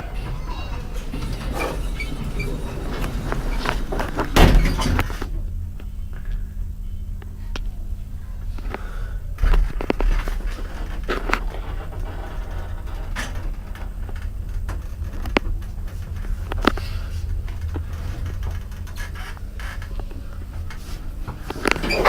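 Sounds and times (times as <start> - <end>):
lift car humming: 0.0 - 22.0.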